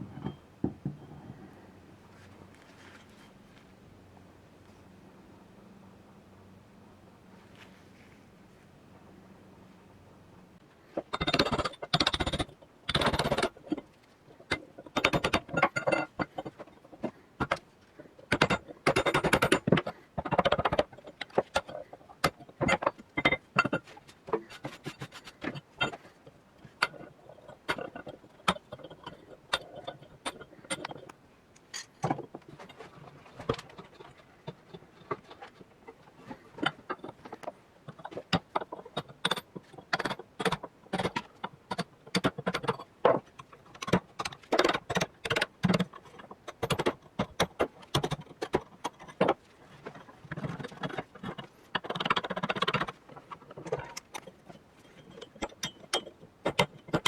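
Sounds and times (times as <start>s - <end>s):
hand tools on metal: 18.3s - 57.0s.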